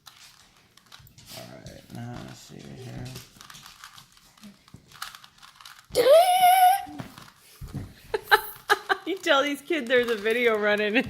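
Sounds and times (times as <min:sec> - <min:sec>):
faint rustling and clicks: 0:00.0 - 0:06.0, 0:06.6 - 0:11.0
high-pitched cry: 0:05.9 - 0:07.1.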